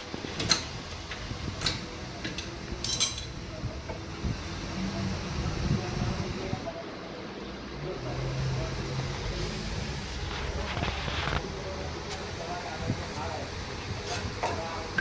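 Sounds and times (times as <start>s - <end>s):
metal tools clinking: 0.4s - 3.4s.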